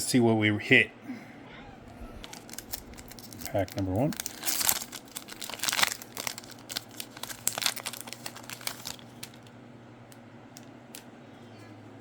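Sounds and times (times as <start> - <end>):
plastic wrapper crinkling and tearing: 2.2 - 9.5.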